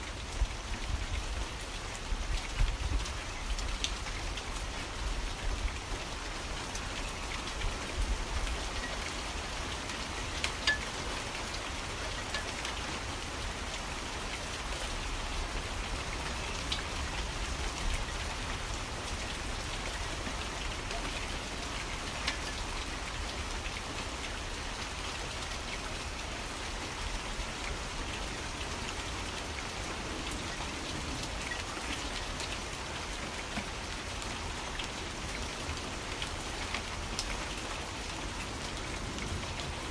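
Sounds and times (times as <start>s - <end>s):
steady rain falling: 0.0s - 39.9s
sharp raindrop ticks: 6.7s - 14.4s, 19.0s - 24.3s.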